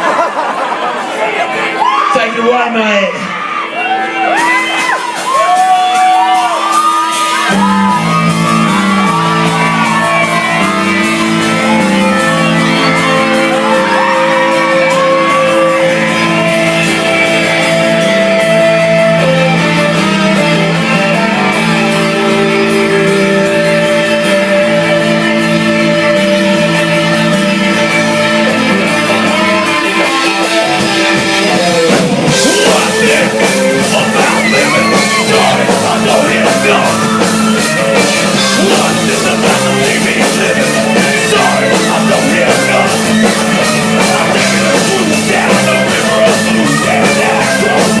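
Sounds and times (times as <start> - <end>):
drums: 0.0 - 48.0
guitar chords: 7.0 - 48.0
person singing: 27.7 - 48.0.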